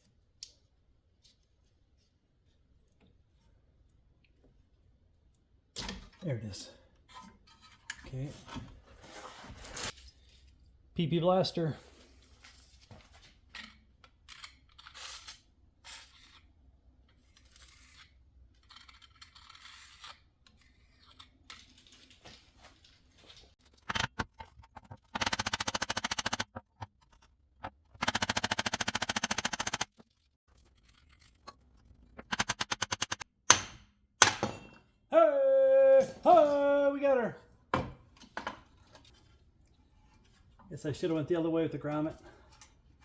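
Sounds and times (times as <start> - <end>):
handling and scraping: 7.0 - 10.8, 11.8 - 25.2, 29.9 - 32.3, 38.0 - 43.0.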